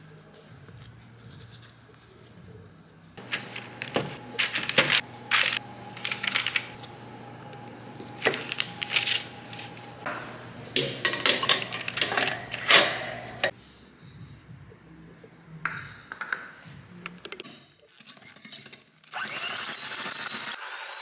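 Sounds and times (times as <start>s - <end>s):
hand mixer motor hum: 3.2s - 13.5s
metal beaters scraping bowl: 3.2s - 13.6s.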